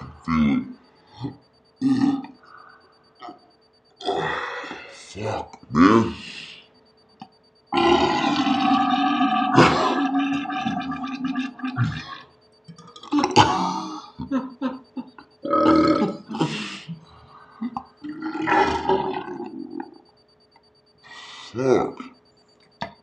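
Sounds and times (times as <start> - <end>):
man belching: 1.8 - 2.4, 4.0 - 4.9, 7.8 - 12.2, 12.8 - 14.4, 15.4 - 16.6, 17.7 - 19.9.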